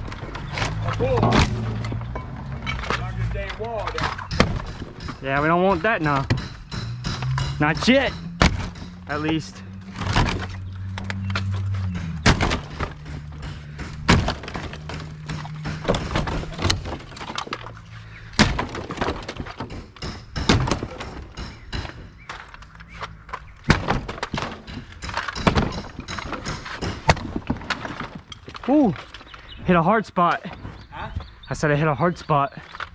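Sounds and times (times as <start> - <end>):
heavy blows smashing a wall: 3.7 - 10.9, 11.6 - 22.4, 23.6 - 29.2.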